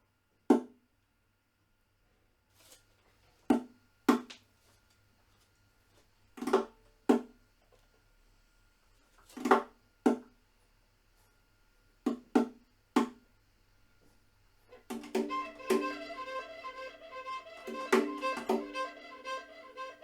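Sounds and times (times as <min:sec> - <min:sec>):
faint steady high tone: 0:14.8 - 0:20.0
short struck percussive notes: 0:15.0 - 0:20.0.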